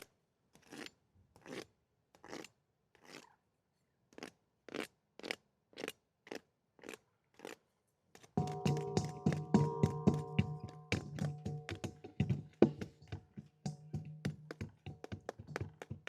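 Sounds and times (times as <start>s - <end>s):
music with steady tones: 8.4s - 15.6s.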